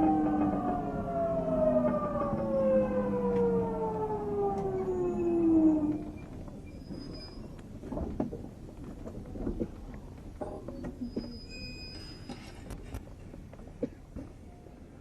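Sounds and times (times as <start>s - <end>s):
train inverter motor whine: 0.0s - 6.9s
train rolling rumble: 0.0s - 15.0s.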